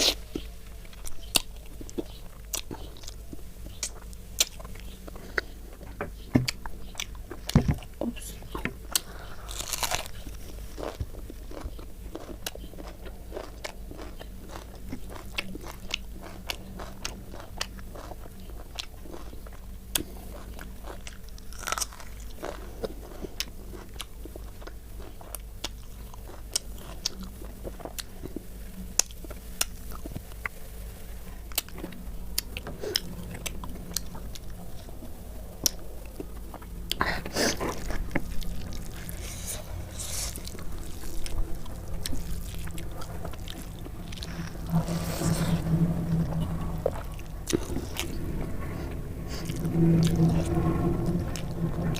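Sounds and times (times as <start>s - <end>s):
person chewing food: 0.0s - 30.6s, 35.6s - 45.8s
crunchy bites: 8.9s - 18.2s, 20.0s - 22.6s.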